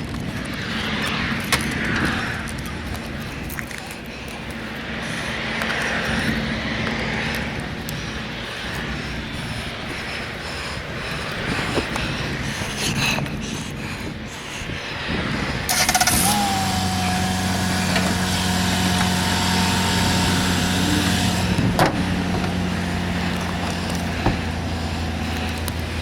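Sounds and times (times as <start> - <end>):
car engine cranking and idling: 15.6 - 26.0.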